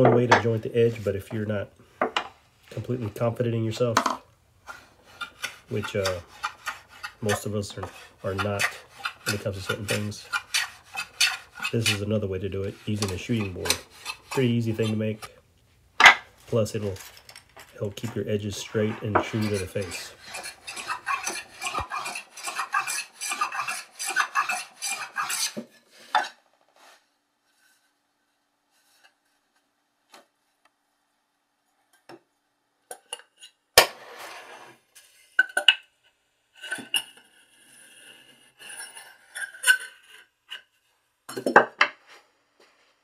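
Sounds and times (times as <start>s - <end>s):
knocks and scrapes: 0.0s - 15.4s, 16.0s - 27.0s, 33.8s - 35.2s
hand plane shaving wood: 4.7s - 15.2s, 18.6s - 25.7s.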